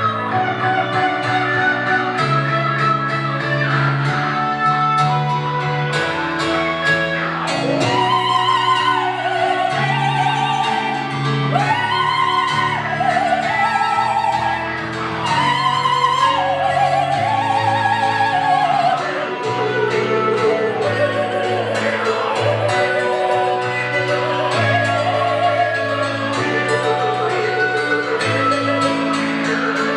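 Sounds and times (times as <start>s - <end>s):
guitar chords: 0.0s - 29.9s
piano chords: 0.0s - 29.9s
operatic soprano singing: 7.6s - 29.9s.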